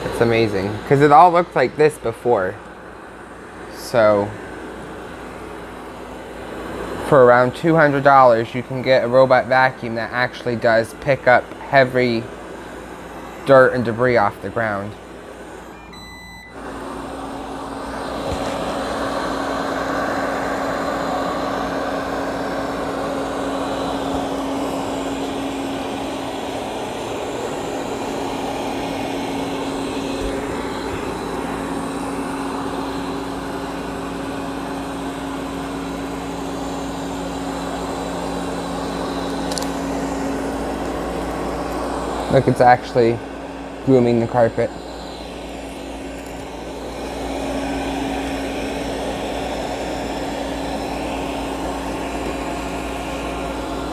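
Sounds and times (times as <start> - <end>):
robot vacuum humming: 10.9 - 53.9.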